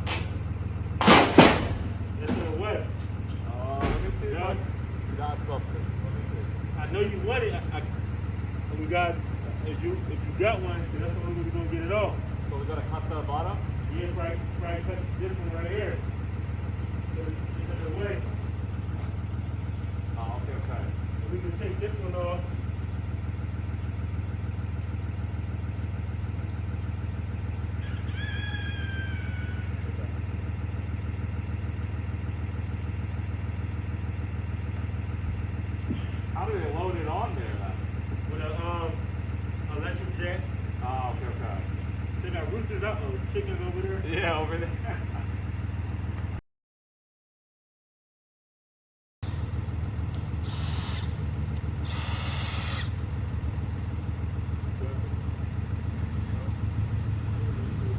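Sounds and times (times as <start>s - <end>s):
truck engine idling: 0.0s - 46.4s, 49.2s - 57.9s
rooster crowing: 27.7s - 30.2s
short hissing bursts: 50.4s - 51.2s, 51.8s - 52.9s.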